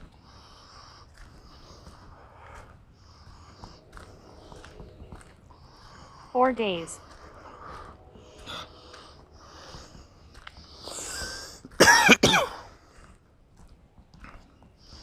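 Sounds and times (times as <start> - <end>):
man coughing: 11.7 - 12.7.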